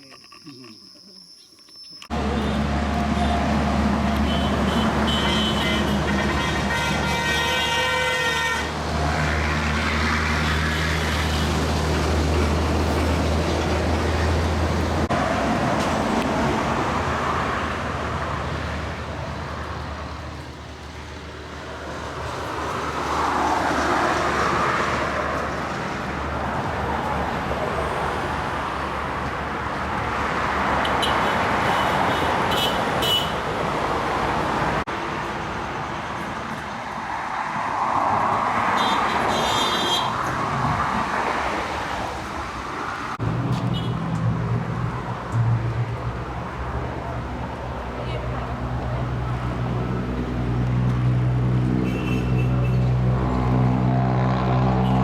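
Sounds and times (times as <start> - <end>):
vehicles passing: 0.0 - 55.0
horn toot: 2.2 - 8.7.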